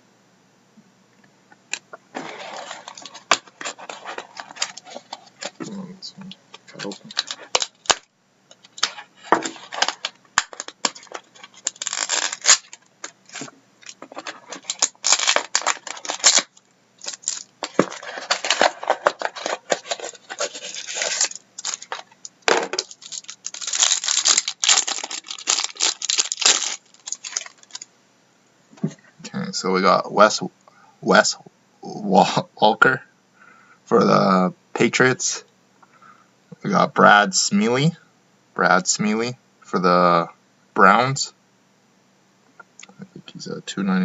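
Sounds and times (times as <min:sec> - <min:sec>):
cards rustling and sliding: 0:02.1 - 0:05.8, 0:06.6 - 0:08.0, 0:08.6 - 0:27.8
wrapper crinkling and tearing: 0:02.2 - 0:05.7, 0:06.6 - 0:27.9.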